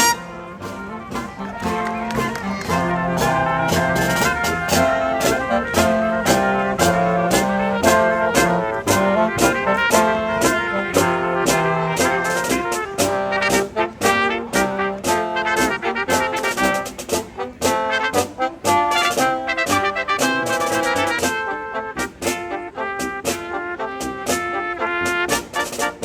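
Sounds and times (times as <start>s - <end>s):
trumpets and trombones: 0.0s - 26.0s
percussion beat: 0.6s - 21.4s.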